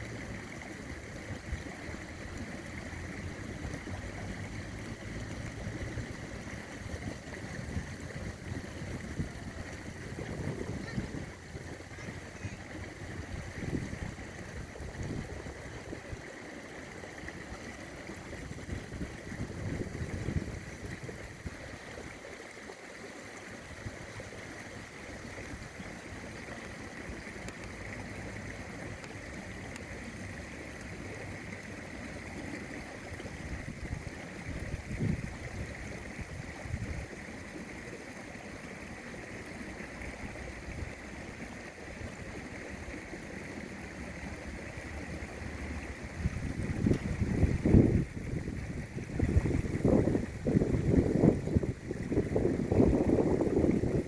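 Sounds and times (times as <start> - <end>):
river water flowing: 0.0 - 54.0
wind buffeting microphone: 5.5 - 16.2, 18.3 - 21.8, 33.2 - 37.1, 46.0 - 54.0.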